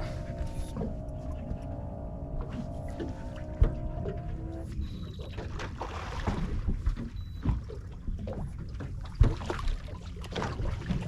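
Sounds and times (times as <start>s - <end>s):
water splashing against boat hull: 2.3s - 11.0s.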